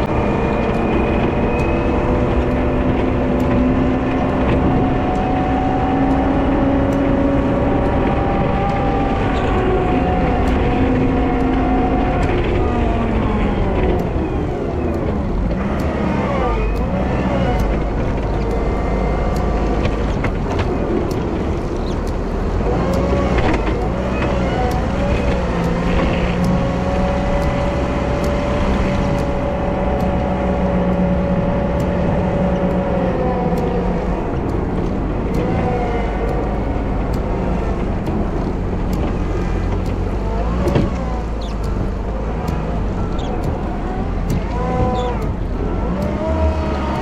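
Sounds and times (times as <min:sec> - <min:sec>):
faint regular ticks: 0:00.0 - 0:47.0
wheel loader diesel engine: 0:00.0 - 0:47.0.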